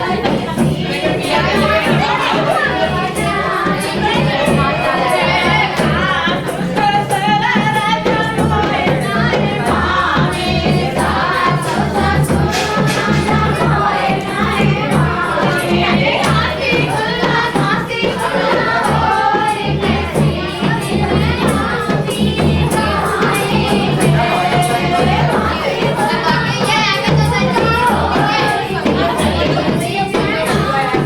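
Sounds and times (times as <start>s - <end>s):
folk song singing: 0.0s - 31.0s
steady low drum beat: 0.0s - 31.0s.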